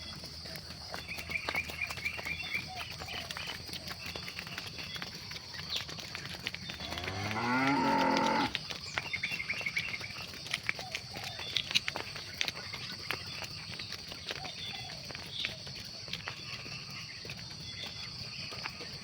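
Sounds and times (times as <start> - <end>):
cow mooing: 6.8 - 8.6.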